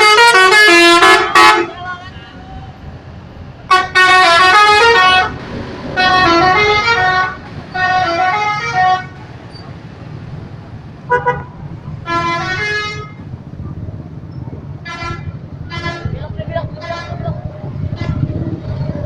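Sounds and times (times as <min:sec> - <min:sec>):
multi-tone musical air horn: 0:00.0 - 0:01.8, 0:03.7 - 0:05.4
low engine rumble: 0:00.3 - 0:19.0.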